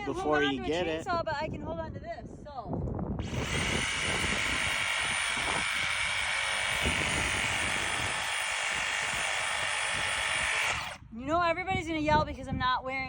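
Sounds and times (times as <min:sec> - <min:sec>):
electric saw cutting wood: 0:03.2 - 0:11.0.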